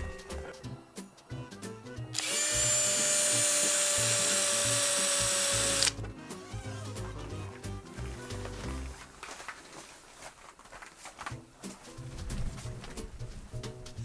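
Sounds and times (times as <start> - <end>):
cordless drill running: 2.2 - 6.0.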